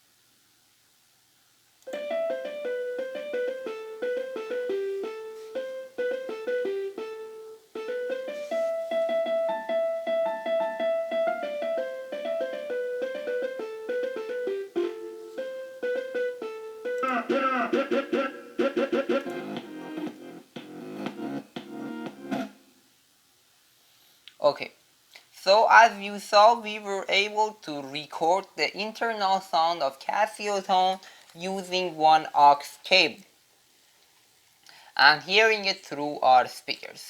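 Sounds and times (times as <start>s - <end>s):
keyboard melody in piano tone: 1.9s - 22.6s.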